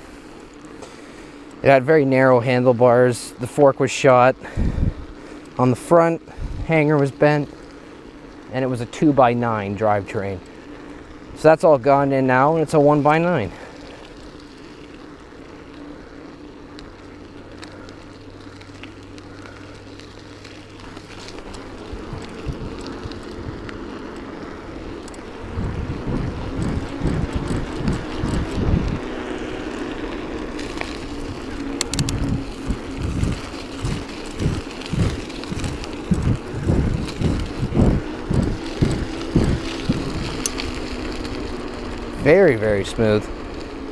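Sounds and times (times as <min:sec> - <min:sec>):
bicycle tyres and drivetrain humming: 0:00.0 - 0:43.9
wind buffeting microphone: 0:04.5 - 0:05.2, 0:06.4 - 0:06.8, 0:21.3 - 0:24.0, 0:24.6 - 0:29.2, 0:30.5 - 0:43.4.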